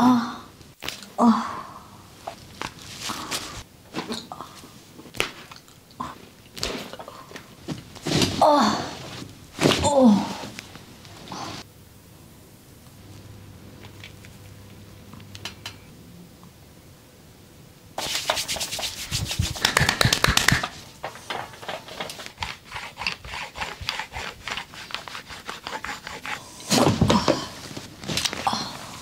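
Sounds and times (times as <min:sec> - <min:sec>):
quick rhythmic rubbing strokes: 0:18.0 - 0:20.9, 0:21.6 - 0:26.4.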